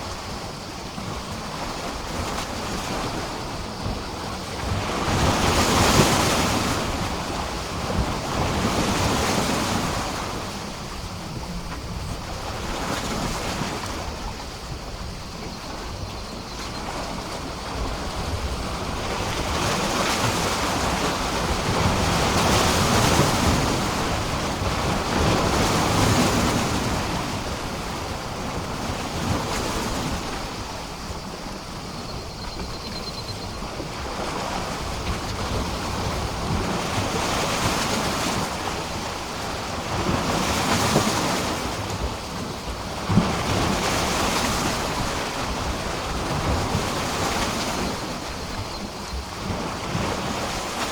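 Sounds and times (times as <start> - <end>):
sea waves breaking against a pier: 0.0 - 50.9.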